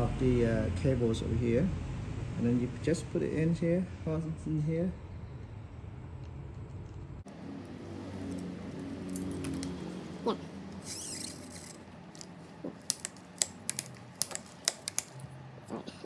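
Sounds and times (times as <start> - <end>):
bicycle gear cable clicking: 8.2 - 10.0, 10.7 - 15.2.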